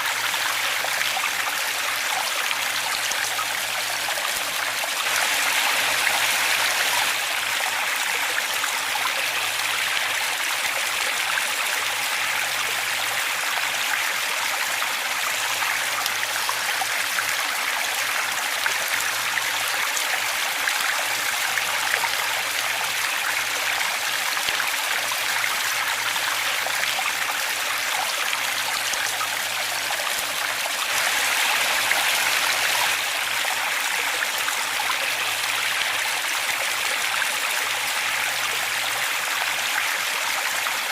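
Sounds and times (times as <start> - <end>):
waterfall rushing water: 0.0 - 11.0, 21.0 - 40.9.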